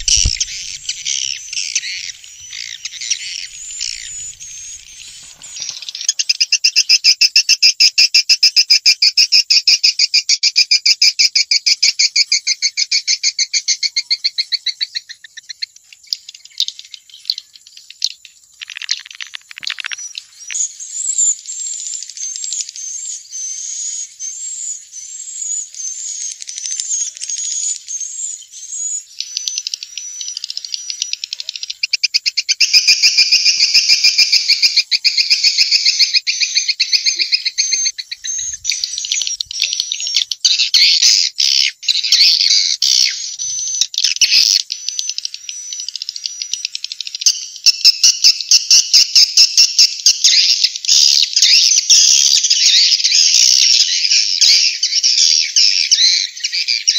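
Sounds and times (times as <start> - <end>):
swiftlet chirp trills: 0.0 - 6.6.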